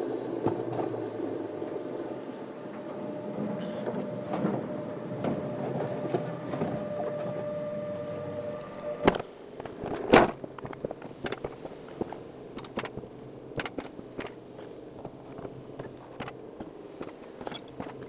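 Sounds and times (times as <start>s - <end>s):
coaster sled humming on rails: 0.0s - 18.0s.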